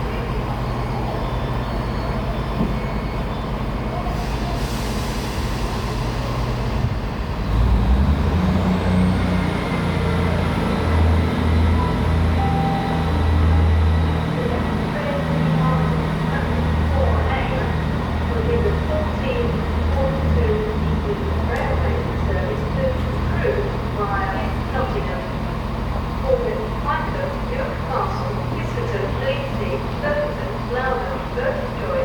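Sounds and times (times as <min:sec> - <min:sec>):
diesel train engine running: 0:00.0 - 0:32.0.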